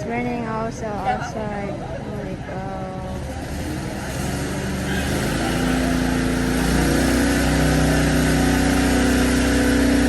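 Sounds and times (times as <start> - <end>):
small gasoline engine running: 2.8 - 10.0.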